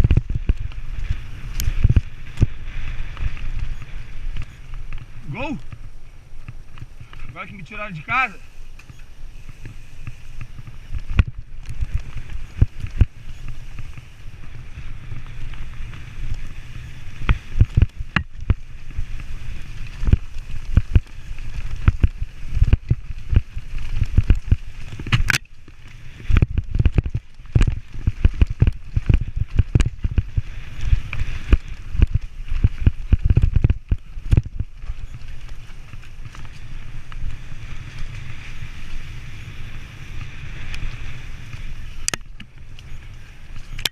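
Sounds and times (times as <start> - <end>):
wind and tyre rumble: 0.0 - 43.9
bike knocks and rattles: 17.1 - 36.6.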